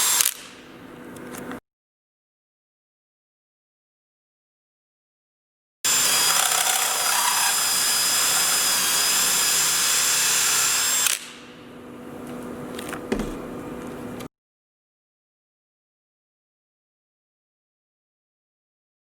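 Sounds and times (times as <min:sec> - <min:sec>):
power drill cutting with high whine: 0:00.0 - 0:00.4, 0:05.9 - 0:11.3.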